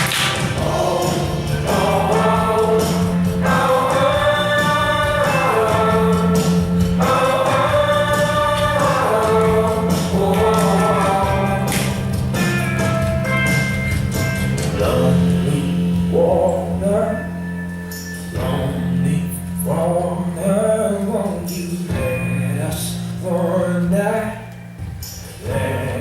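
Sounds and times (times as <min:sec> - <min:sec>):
wordless choir-like vocals: 0:00.0 - 0:12.1
steady low bass: 0:00.0 - 0:26.0.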